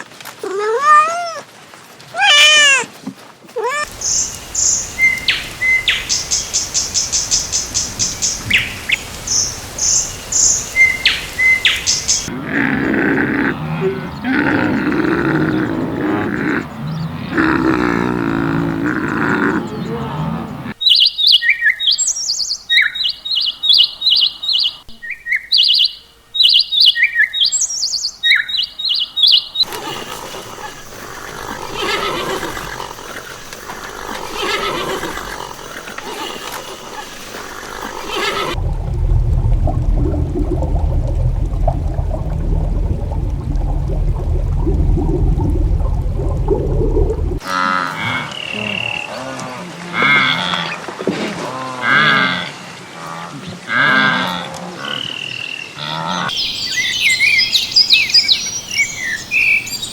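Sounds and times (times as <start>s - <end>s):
mixed animal noises: 3.7s - 20.8s, 28.3s - 38.6s, 43.1s - 50.8s
high bird chirps: 3.9s - 12.3s, 20.8s - 29.7s, 56.3s - 59.9s
strong low rumble: 38.6s - 47.4s
animal bleats: 53.1s - 55.0s.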